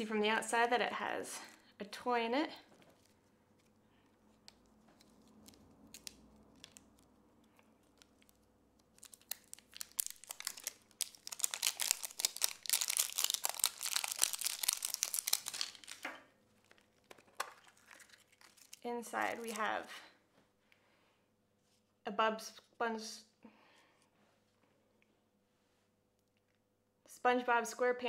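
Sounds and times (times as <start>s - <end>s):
wrapper crinkling and tearing: 2.8s - 19.8s.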